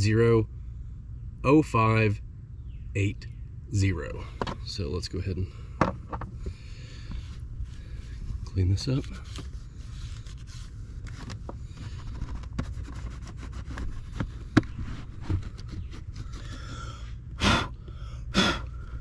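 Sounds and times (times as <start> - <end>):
hand scraping and rubbing: 6.3 - 16.9.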